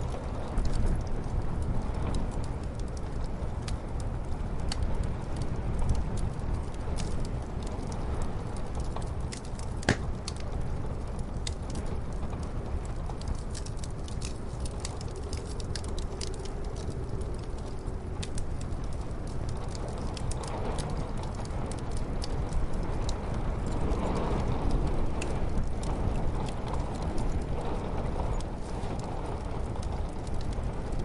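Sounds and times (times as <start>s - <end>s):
muffled storm wind: 0.0s - 31.0s
wood fire crackling: 0.0s - 31.0s
sharp pops of fire: 8.9s - 10.7s.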